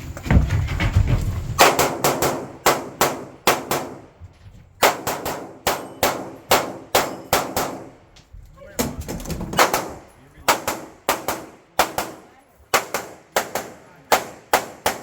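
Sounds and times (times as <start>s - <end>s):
rapid gunfire: 10.5s - 15.0s.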